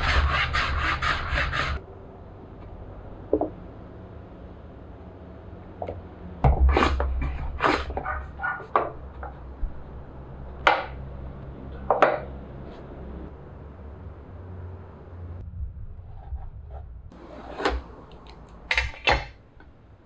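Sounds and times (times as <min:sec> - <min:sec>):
wooden knocks and scrapes: 0:16.2 - 0:19.3.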